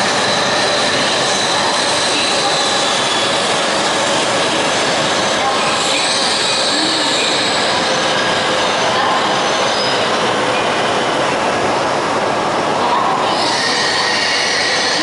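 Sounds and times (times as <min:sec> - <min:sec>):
train rushing noise: 0:00.0 - 0:15.0.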